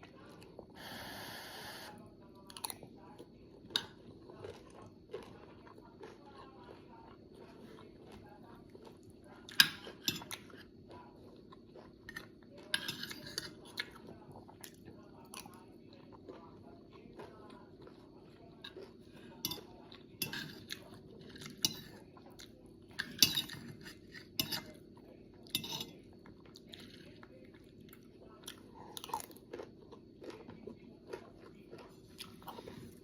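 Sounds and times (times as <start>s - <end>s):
chewing: 2.3s - 33.0s
utensils clinking on a plate: 9.6s - 10.6s, 12.7s - 13.6s, 19.4s - 20.7s, 23.0s - 24.8s, 25.5s - 26.0s.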